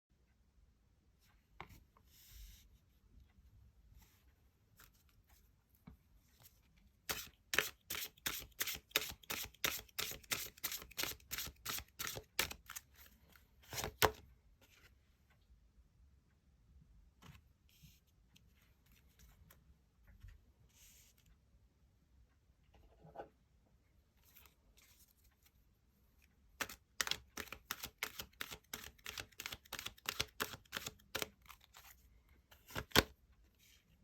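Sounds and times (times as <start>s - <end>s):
cards sliding: 7.1s - 12.8s, 13.7s - 14.2s, 26.6s - 33.1s
cards snapping while shuffled: 26.6s - 31.3s, 32.7s - 33.1s.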